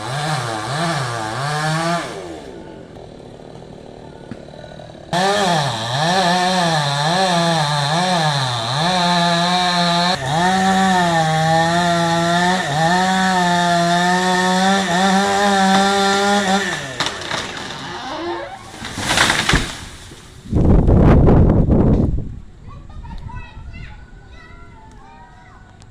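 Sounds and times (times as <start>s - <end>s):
chainsaw engine revving: 0.0s - 20.3s.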